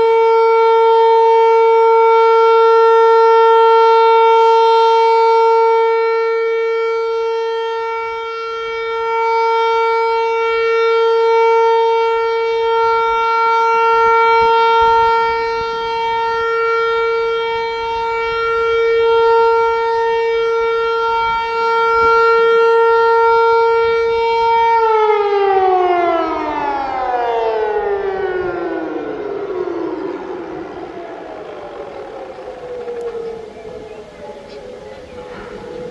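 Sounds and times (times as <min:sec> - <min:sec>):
motor siren steady tone: 0:00.0 - 0:35.9.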